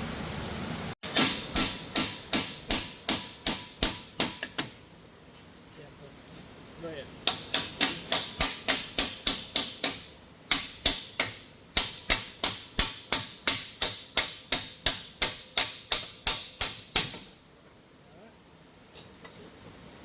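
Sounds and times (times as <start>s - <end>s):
hammer striking metal clamp: 1.0s - 4.8s, 7.3s - 17.4s.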